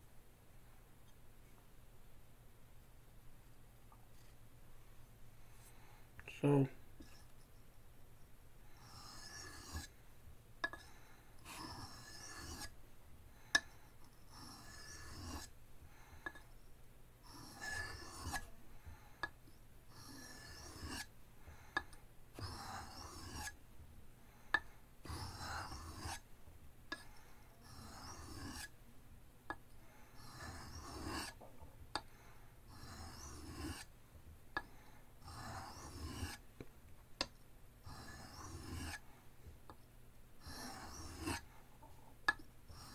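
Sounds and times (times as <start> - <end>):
knife scraping on sharpening stone: 8.8 - 9.9, 11.5 - 12.7, 14.4 - 15.5, 17.3 - 18.5, 20.0 - 21.1, 22.4 - 23.6, 25.1 - 26.2, 27.6 - 28.7, 30.2 - 31.4, 32.8 - 33.9, 35.3 - 36.4, 37.9 - 39.0, 40.4 - 41.4.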